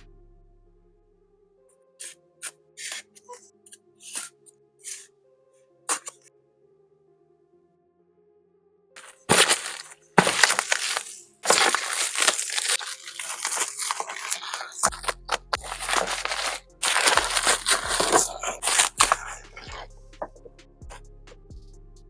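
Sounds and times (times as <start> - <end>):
packaging crackling and rustling: 9.0 - 19.4
background music with beat: 14.9 - 22.0.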